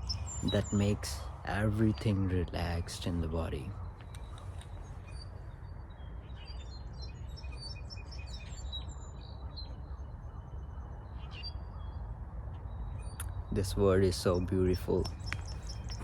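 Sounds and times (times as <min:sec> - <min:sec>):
steady low rumble: 0:00.0 - 0:06.8
birds chirping: 0:00.0 - 0:16.0.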